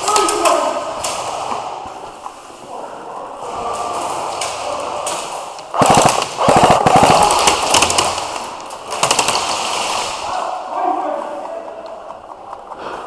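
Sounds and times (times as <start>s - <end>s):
airsoft gun firing bursts: 5.7s - 10.2s.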